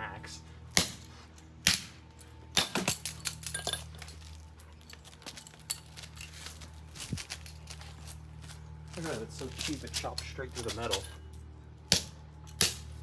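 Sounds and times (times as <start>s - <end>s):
axe striking electrical socket: 0.8s - 1.9s
broken pieces clinking and rattling: 2.6s - 11.5s.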